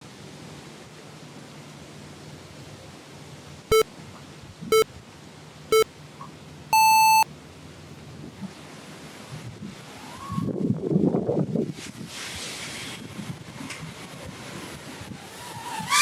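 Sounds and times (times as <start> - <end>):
countdown beeps: 6.8 - 7.2.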